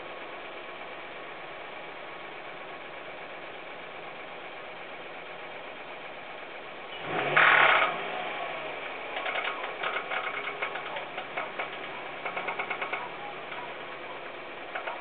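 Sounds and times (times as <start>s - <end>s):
car engine revving: 6.9s - 15.0s
rhythmic engine knock: 9.0s - 15.0s.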